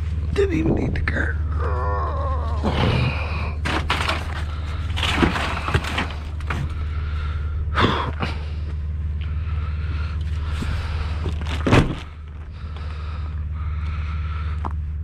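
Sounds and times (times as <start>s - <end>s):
steady low hum: 0.0s - 15.0s
scraping rush: 2.6s - 7.5s
scrap knocking and thudding: 3.6s - 6.9s.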